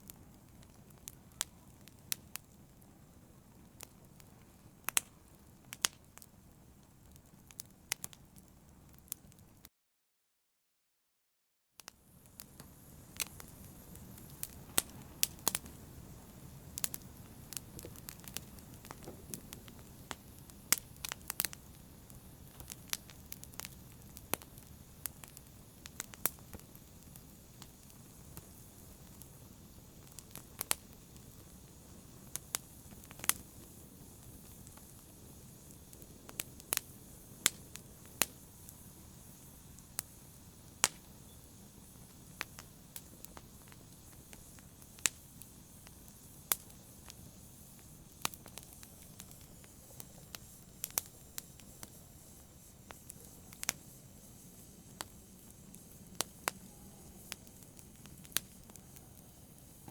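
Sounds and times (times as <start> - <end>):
fire crackling and popping: 0.0 - 9.7, 11.8 - 59.9
low rush of burning: 12.0 - 59.9.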